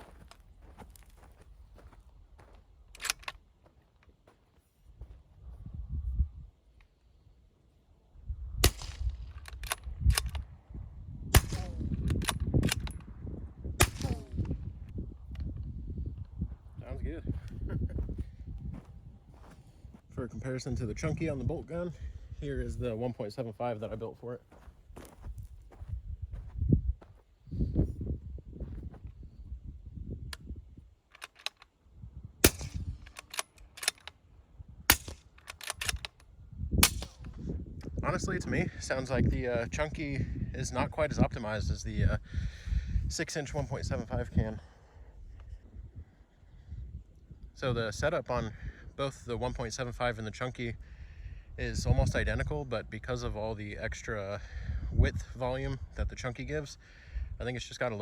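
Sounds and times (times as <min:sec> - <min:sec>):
rifle bolt clacks: 0:02.9 - 0:03.4, 0:31.1 - 0:31.7, 0:32.5 - 0:34.2, 0:34.9 - 0:37.3
suppressed rifle shots: 0:08.6 - 0:10.2, 0:11.3 - 0:11.9, 0:13.8 - 0:14.4, 0:32.4 - 0:34.0, 0:34.9 - 0:36.0.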